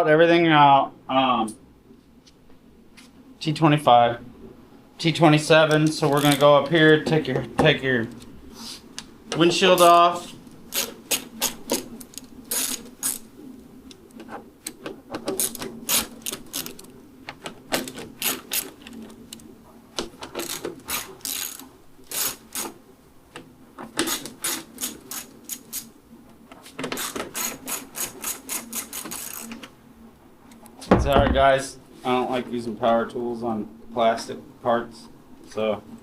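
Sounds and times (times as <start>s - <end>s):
hand ratchet clicking: 20.4s - 22.7s, 27.0s - 29.6s.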